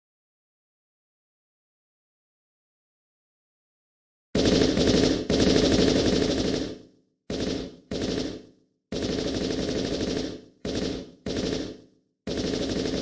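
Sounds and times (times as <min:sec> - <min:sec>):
machine gun bursts: 0:04.4 - 0:13.0.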